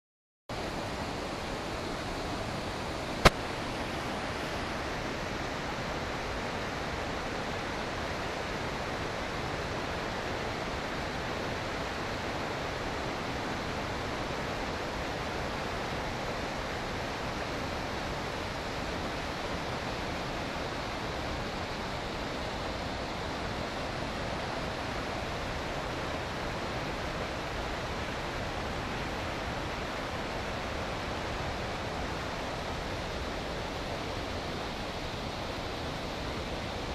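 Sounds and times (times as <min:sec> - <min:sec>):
waterfall rushing: 0:00.6 - 0:36.9.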